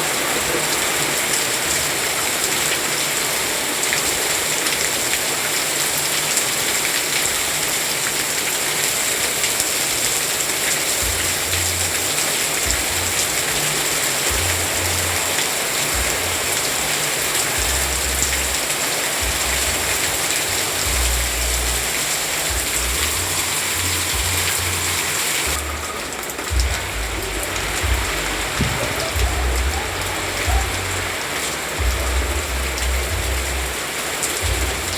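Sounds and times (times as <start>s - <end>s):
steady rain: 0.0s - 34.9s
low rumble: 25.5s - 31.2s.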